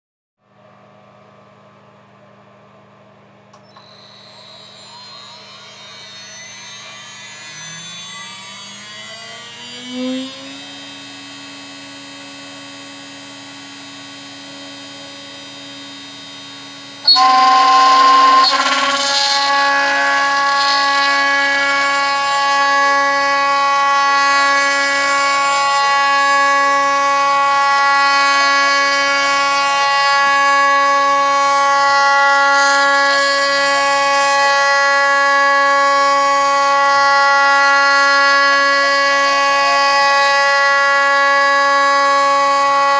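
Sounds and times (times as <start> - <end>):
metal cutting squeal: 3.6 - 11.0, 17.0 - 26.2
milling machine whine and hum: 3.6 - 42.9.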